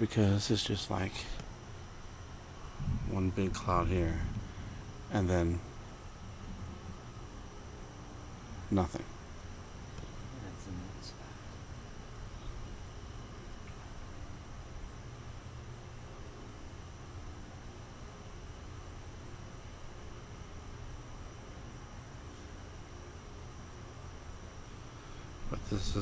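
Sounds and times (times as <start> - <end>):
crickets chirping: 0.0 - 26.0
low rumble: 2.4 - 9.2.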